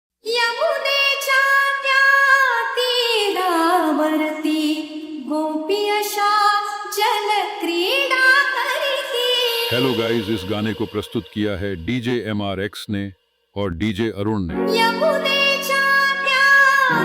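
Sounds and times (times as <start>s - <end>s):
high solo voice singing: 9.5s - 17.0s.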